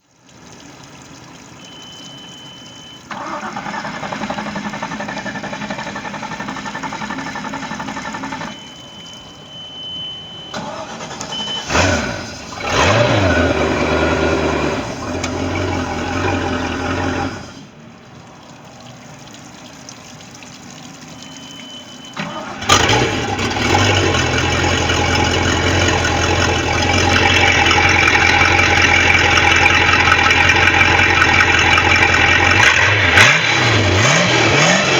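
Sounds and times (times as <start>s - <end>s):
warning horn beep: 1.6s - 3.4s, 8.4s - 12.2s, 21.1s - 22.9s
boat engine running: 1.8s - 17.8s, 21.6s - 34.9s
boat engine cranking: 3.1s - 9.5s, 10.5s - 17.6s, 22.1s - 34.9s.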